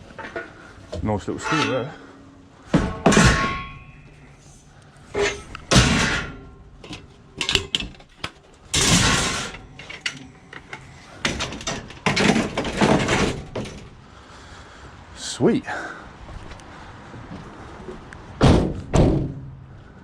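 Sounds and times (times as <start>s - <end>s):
metal scraping clatters: 0.0s - 14.0s
scrap metal knocks and clanks: 0.0s - 14.0s.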